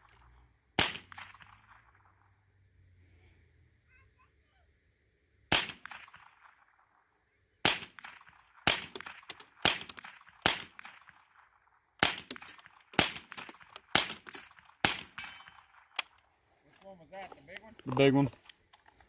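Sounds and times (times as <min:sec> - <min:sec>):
rifle shots: 0:00.8 - 0:02.2, 0:05.5 - 0:07.0, 0:07.6 - 0:16.2.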